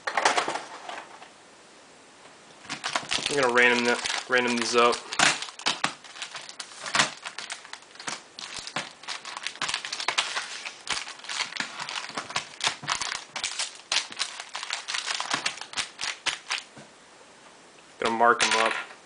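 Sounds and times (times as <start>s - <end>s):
card pack wrappers crinkling: 2.6s - 16.7s.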